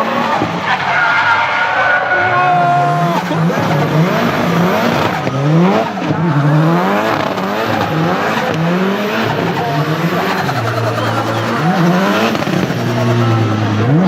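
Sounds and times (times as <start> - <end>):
car engine revving: 0.0 - 14.0
tyre squeal: 9.6 - 13.5.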